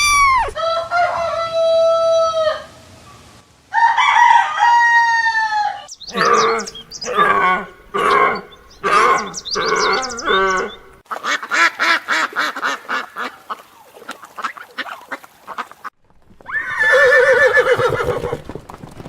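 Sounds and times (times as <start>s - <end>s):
rooster crowing: 0.2s - 2.8s, 3.7s - 10.9s.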